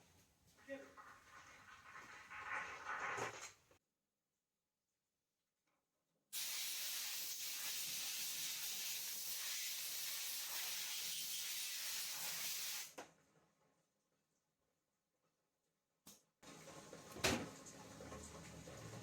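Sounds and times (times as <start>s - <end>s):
air nozzle hissing: 6.4s - 12.9s.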